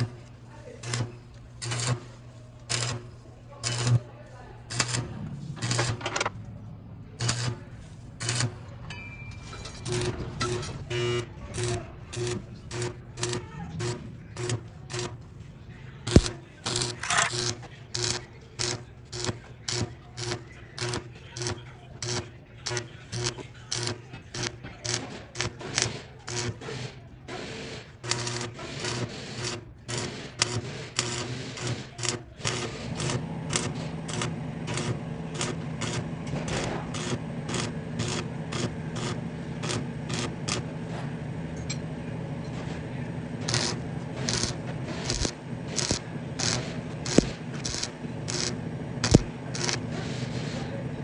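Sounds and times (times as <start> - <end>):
engine humming: 33.0 - 50.0
sharp irregular clicks: 43.5 - 49.8.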